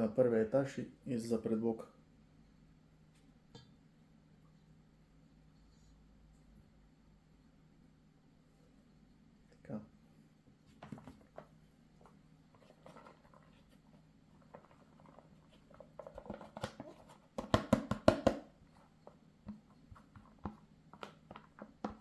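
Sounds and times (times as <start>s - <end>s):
cheese and box rustling: 10.7s - 17.4s, 18.7s - 22.0s
sharp knocks of box tapped: 17.4s - 18.5s.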